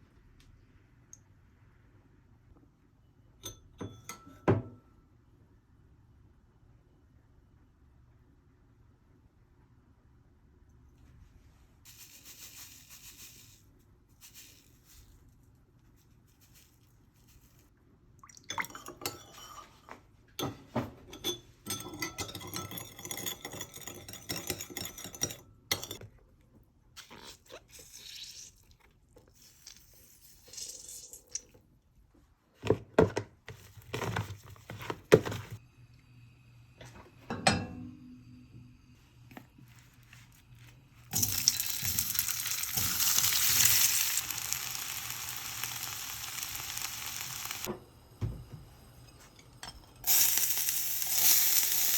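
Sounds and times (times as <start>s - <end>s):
dishes and utensils clinking: 18.5s - 26.1s
running liquid: 41.1s - 47.7s.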